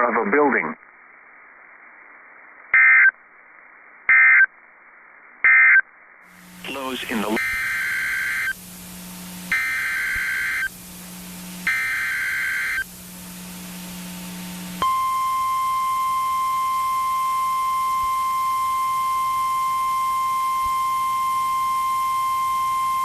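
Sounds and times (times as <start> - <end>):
steady warning alarm tone: 6.7 - 8.6, 9.5 - 10.7, 11.6 - 12.9, 14.8 - 23.0.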